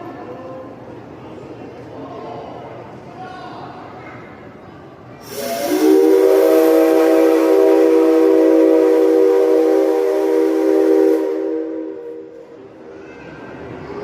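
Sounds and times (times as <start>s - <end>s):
steam locomotive whistle: 5.2s - 12.4s
steam hiss: 5.2s - 12.5s.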